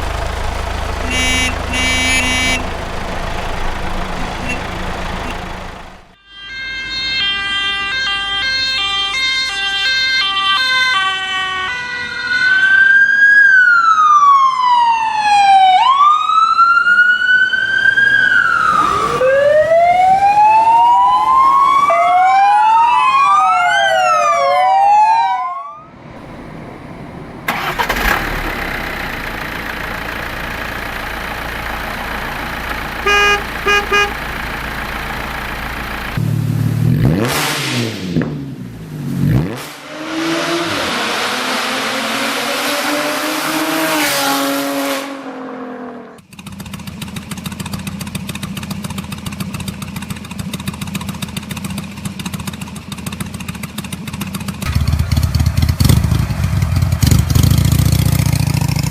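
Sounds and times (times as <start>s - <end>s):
emergency vehicle siren: 0.0s - 26.0s, 31.4s - 36.2s
short beeps: 1.1s - 2.8s.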